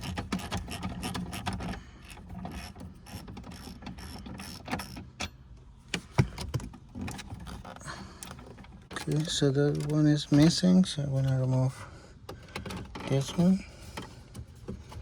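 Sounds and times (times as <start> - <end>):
hand ratchet clicking: 0.0 - 5.3.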